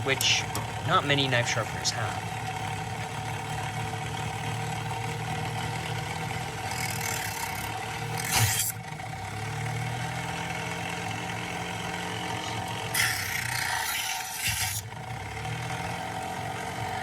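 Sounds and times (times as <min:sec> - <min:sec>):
knife sharpener motor humming: 0:05.9 - 0:08.9, 0:12.0 - 0:15.1
blade scraping through sharpener: 0:06.6 - 0:08.8, 0:12.9 - 0:14.9.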